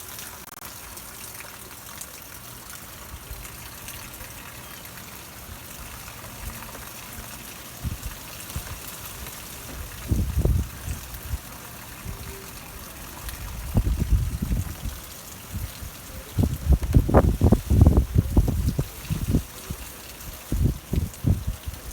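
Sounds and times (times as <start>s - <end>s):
heavy rain falling: 2.1s - 21.9s
wind buffeting microphone: 7.8s - 21.9s.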